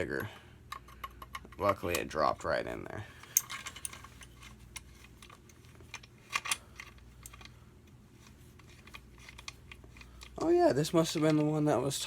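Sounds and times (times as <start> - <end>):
metal parts and tools clicking: 3.2 - 7.6, 8.2 - 11.7.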